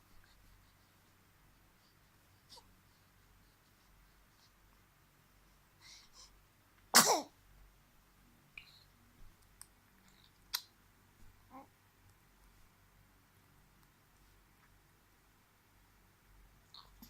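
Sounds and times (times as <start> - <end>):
baby sneezing: 6.9 - 7.3.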